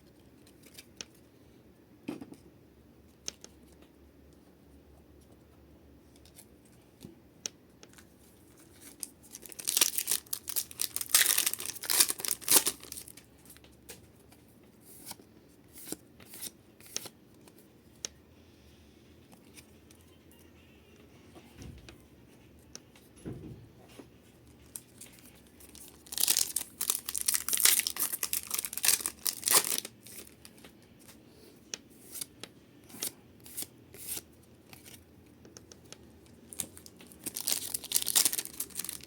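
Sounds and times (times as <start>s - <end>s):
foil wrapper tearing: 9.0s - 13.1s, 25.7s - 30.4s, 36.5s - 39.0s.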